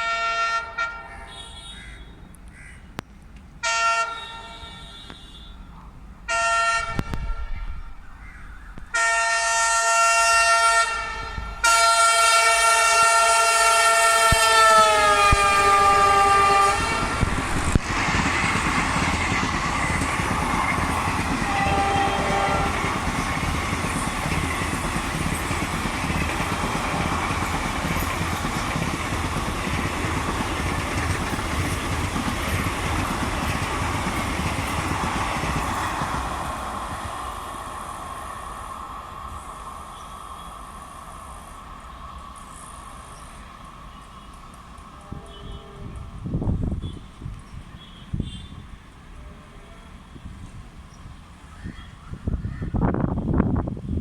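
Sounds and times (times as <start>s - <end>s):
multi-tone locomotive air horn: 0.0s - 2.2s, 3.6s - 5.7s, 6.3s - 7.8s, 8.9s - 17.8s, 21.2s - 23.2s, 26.4s - 27.7s, 39.9s - 40.8s, 43.9s - 50.6s
passenger coaches rumbling past: 0.0s - 54.0s.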